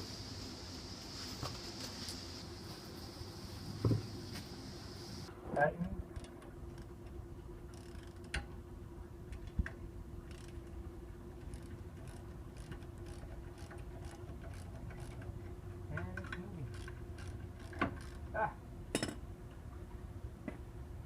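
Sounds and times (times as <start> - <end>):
steady low hum: 0.0 - 21.0
ratchet wrench clicking: 7.7 - 8.2, 10.3 - 10.6, 11.4 - 15.2, 16.0 - 18.2.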